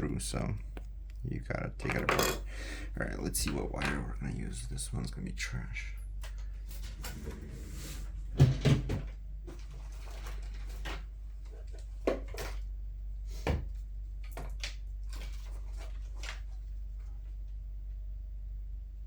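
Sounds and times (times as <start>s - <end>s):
small parts knocking and rustling: 1.8s - 2.6s.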